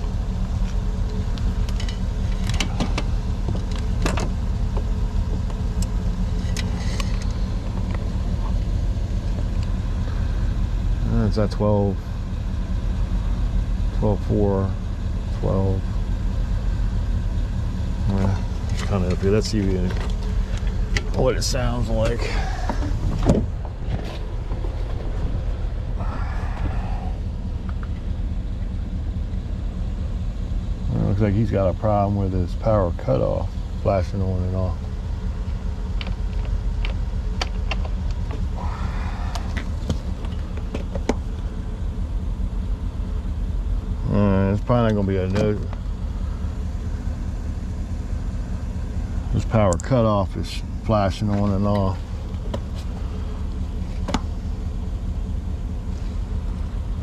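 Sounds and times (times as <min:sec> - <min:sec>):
high wavering whine: 0:00.0 - 0:35.3
vehicle engine idling: 0:00.0 - 0:57.0.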